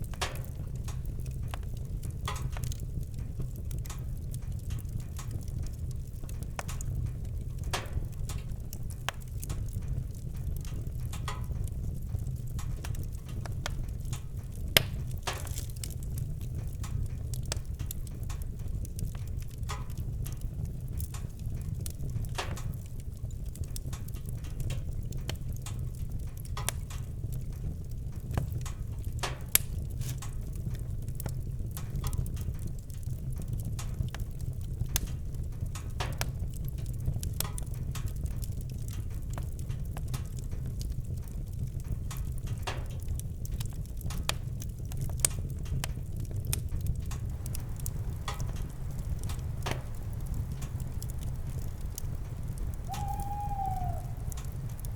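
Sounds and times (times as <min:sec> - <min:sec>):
campfire crackling and popping: 0:00.0 - 0:54.9
steady low rumble: 0:47.2 - 0:54.9.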